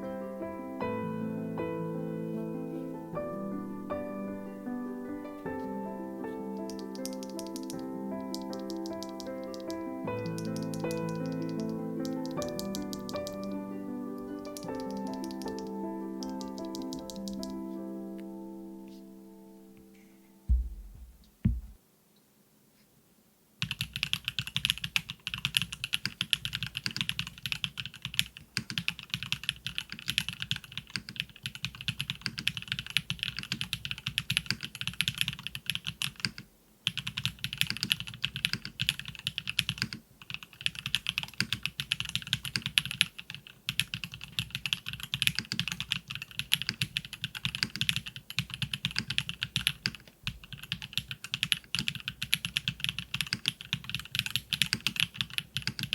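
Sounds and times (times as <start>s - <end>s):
typing on mechanical keyboard: 6.7s - 13.6s, 14.4s - 17.5s, 23.6s - 55.9s.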